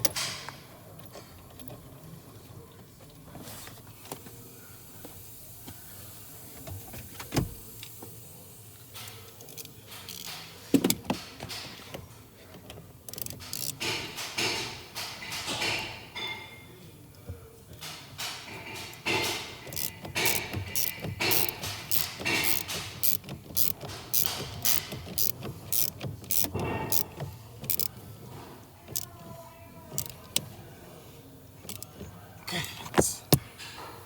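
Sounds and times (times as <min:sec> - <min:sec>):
tools and metal parts clinking: 0:18.4 - 0:27.9.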